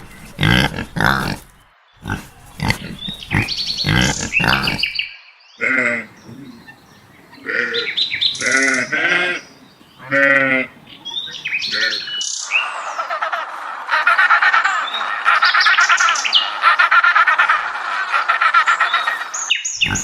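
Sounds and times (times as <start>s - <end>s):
high bird chirps: 0.0s - 9.0s, 19.4s - 20.0s
small birds chattering: 0.0s - 20.0s
goat or sheep bleating: 5.6s - 6.2s, 7.4s - 9.4s.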